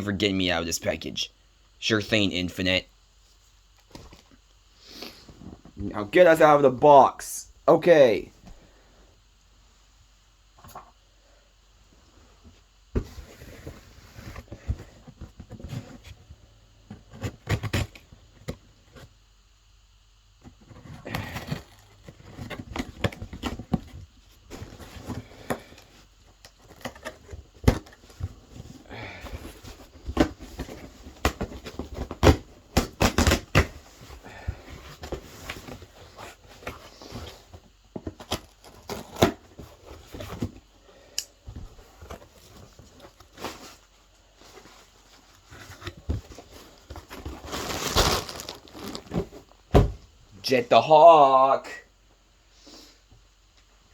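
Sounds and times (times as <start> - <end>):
paper and plastic crinkling: 41.8 - 49.6
tape and packaging tearing: 47.5 - 49.3.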